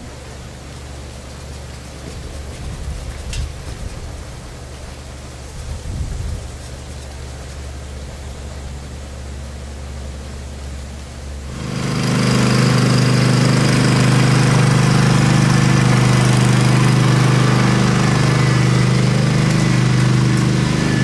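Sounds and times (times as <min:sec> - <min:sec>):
small gasoline engine running: 0:11.4 - 0:21.0.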